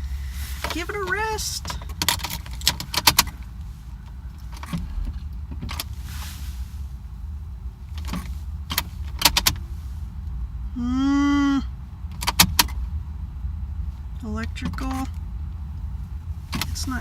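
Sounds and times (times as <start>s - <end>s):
low steady hum: 0.0s - 17.0s
car keys jangling: 0.4s - 6.0s.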